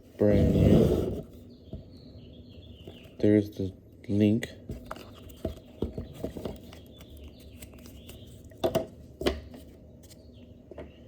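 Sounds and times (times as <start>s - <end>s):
clicks and taps handling a box: 4.6s - 9.7s.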